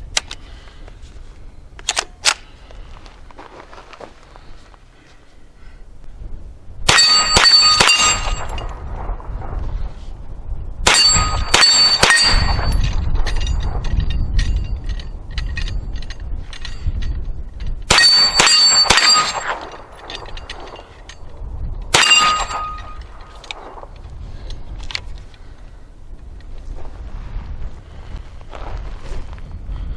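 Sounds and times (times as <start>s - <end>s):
metallic clang of steel targets: 6.9s - 8.8s, 10.8s - 21.3s, 21.9s - 23.6s
gunshots: 10.8s - 12.9s, 17.9s - 20.8s, 21.9s - 23.0s.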